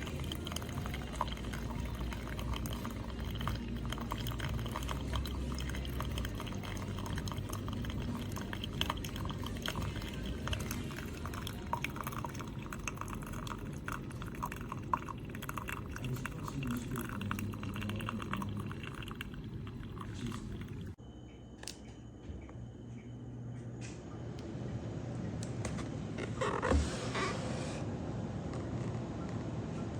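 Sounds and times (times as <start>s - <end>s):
coffee maker gurgling: 0.0s - 21.0s
coffee pouring into cup: 0.0s - 21.0s.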